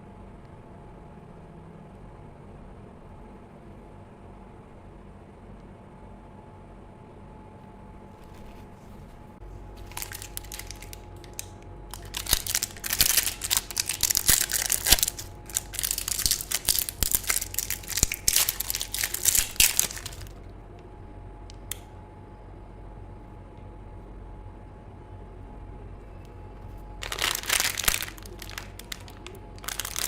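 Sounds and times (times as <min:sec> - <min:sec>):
crunchy food chewing: 0:09.6 - 0:20.4, 0:27.0 - 0:30.0.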